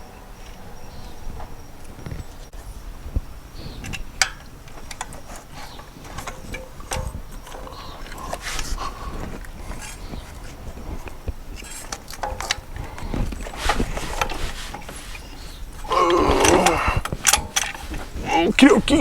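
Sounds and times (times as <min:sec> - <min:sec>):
hand tools clinking on metal: 0:03.7 - 0:19.0
wavering groan-like voice: 0:15.8 - 0:19.0.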